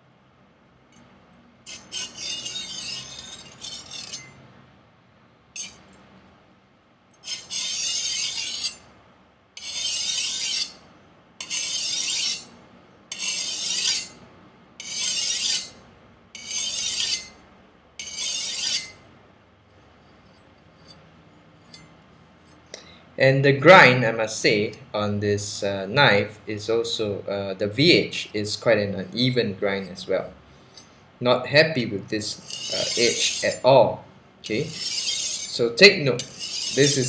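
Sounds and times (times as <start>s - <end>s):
knife scraping on whetstone: 1.7s - 4.4s, 5.6s - 5.8s, 7.2s - 8.9s, 9.6s - 10.8s, 11.4s - 12.5s, 13.1s - 14.2s, 14.8s - 15.8s, 16.4s - 17.4s, 18.0s - 19.0s, 32.4s - 33.6s, 34.5s - 35.6s, 36.2s - 37.0s.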